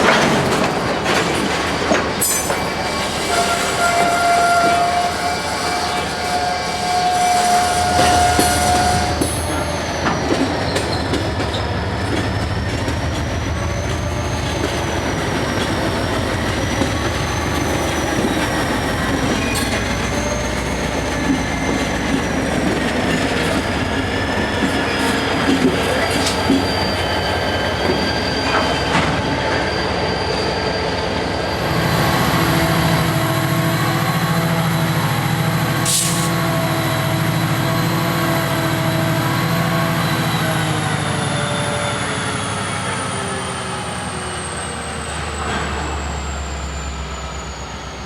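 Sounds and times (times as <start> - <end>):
low locomotive engine throb: 0.0 - 48.0
wavering wheel squeal: 2.2 - 35.6.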